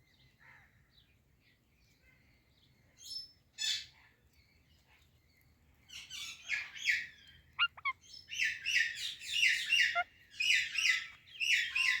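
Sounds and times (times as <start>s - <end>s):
parakeet chirping: 7.6s - 8.0s, 9.4s - 11.0s.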